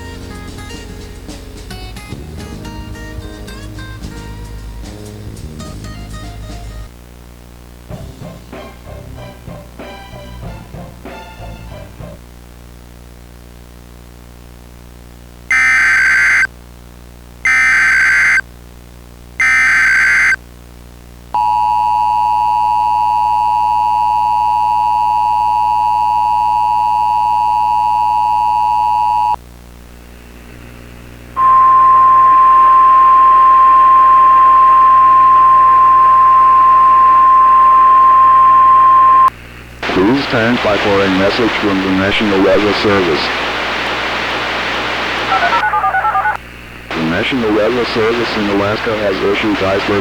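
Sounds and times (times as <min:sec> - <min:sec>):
static: 0:06.9 - 0:07.9, 0:12.2 - 0:21.4, 0:22.6 - 0:50.0
data burst screech: 0:15.5 - 0:16.5, 0:17.5 - 0:18.4, 0:19.4 - 0:20.4, 0:45.2 - 0:46.4
loud steady alert tone: 0:15.5 - 0:16.5, 0:17.5 - 0:18.4, 0:19.4 - 0:20.4
two-tone attention signal: 0:15.5 - 0:16.5, 0:17.5 - 0:18.4, 0:19.4 - 0:20.4, 0:31.4 - 0:39.3.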